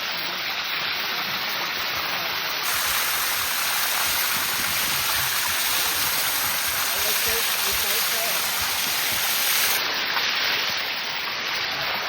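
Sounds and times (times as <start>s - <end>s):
waterfall rushing: 2.6s - 9.8s.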